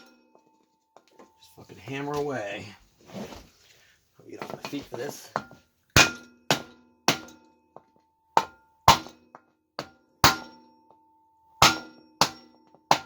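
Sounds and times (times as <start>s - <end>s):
hammer striking wood block: 0.0s - 0.5s, 5.3s - 11.0s, 11.6s - 13.0s
metallic ring: 0.0s - 2.5s, 5.4s - 12.9s.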